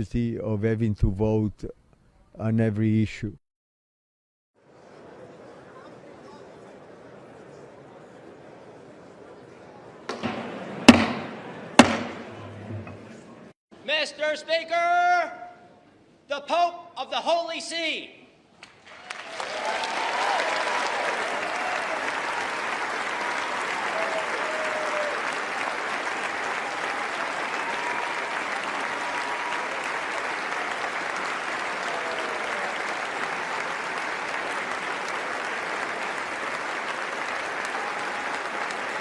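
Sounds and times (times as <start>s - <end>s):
audience applauding: 18.6s - 39.0s.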